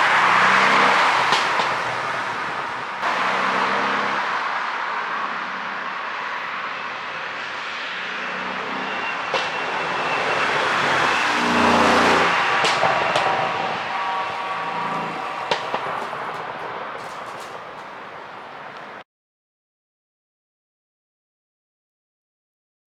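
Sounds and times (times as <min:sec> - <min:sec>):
sharp exhaust pops: 0:00.0 - 0:04.2, 0:10.8 - 0:19.0
car engine driving past: 0:00.0 - 0:19.0.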